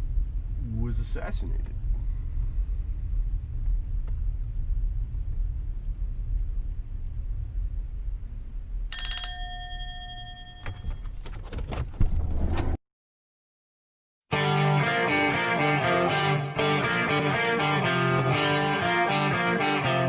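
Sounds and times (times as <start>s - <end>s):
bell-like ding: 8.9s - 11.0s.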